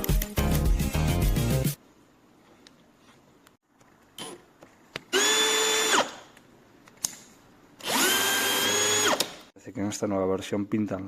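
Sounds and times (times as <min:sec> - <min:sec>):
cordless drill motor whine: 0:05.1 - 0:06.2, 0:07.8 - 0:09.3.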